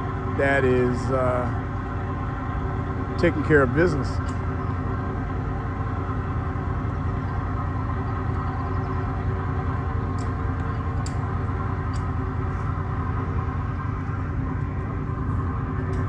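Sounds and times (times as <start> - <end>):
engine-like hum: 0.0 - 16.0.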